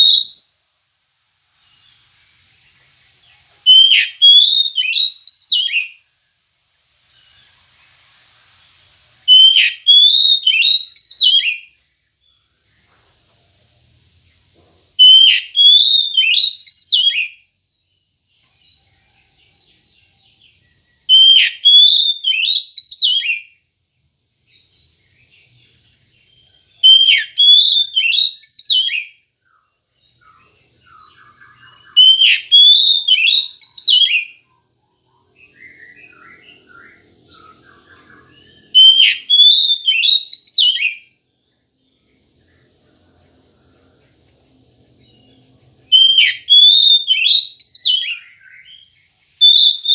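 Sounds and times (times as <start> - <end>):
bird whistled song phrases: 0.0 - 0.6, 2.8 - 6.0, 9.2 - 12.4, 15.0 - 23.6, 24.4 - 41.2, 45.1 - 49.9
soft bird twittering: 7.0 - 49.9.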